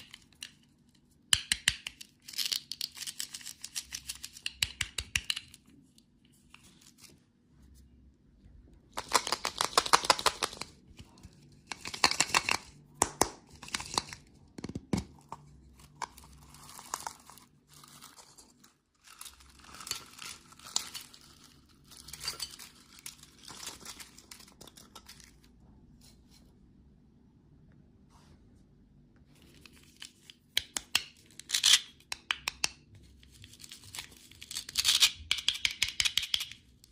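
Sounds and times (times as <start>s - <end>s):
candy wrapper crinkling: 1.5s - 5.8s, 8.9s - 25.5s.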